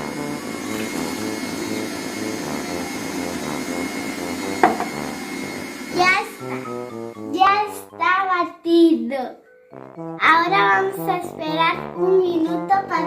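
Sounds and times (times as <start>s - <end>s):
electric hand mixer running: 0.0s - 7.4s.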